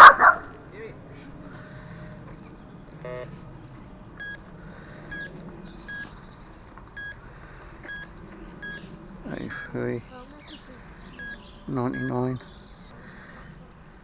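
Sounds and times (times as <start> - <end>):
metal detector high beeps: 5.1 - 5.3, 5.9 - 6.1, 7.9 - 8.8, 11.2 - 12.2
metal detector lower tone: 7.9 - 8.8, 11.2 - 12.2.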